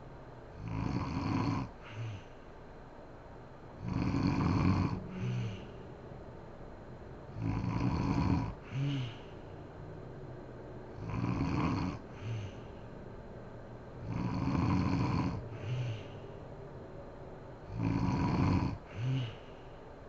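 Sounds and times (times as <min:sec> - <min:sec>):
woman snoring: 0:00.6 - 0:02.3, 0:03.8 - 0:05.8, 0:07.4 - 0:09.3, 0:11.0 - 0:12.8, 0:14.0 - 0:16.2, 0:17.7 - 0:19.6.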